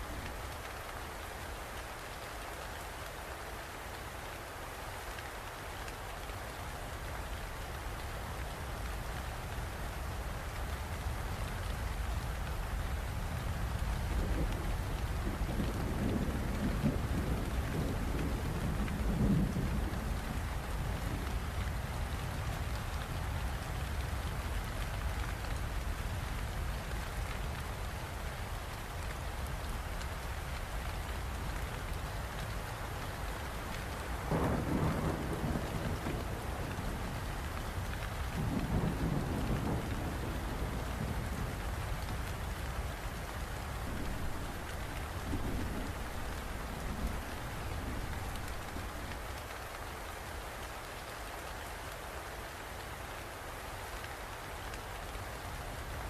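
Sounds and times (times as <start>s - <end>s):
heavy rain: 0.0s - 56.0s
thunder rolling: 43.8s - 49.1s.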